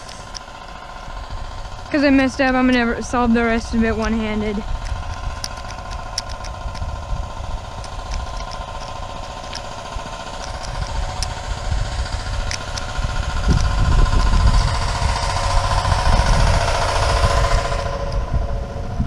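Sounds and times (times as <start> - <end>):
bicycle rattling hum: 0.0 - 19.0
wind rumbling on microphone: 0.0 - 19.0.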